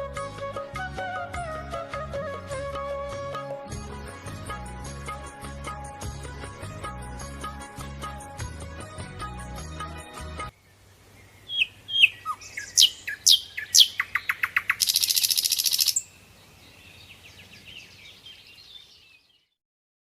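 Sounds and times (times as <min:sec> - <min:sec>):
bird calls: 0:10.6 - 0:19.5
faint bird chattering: 0:11.5 - 0:16.1
bird buzzy trill: 0:11.9 - 0:16.0.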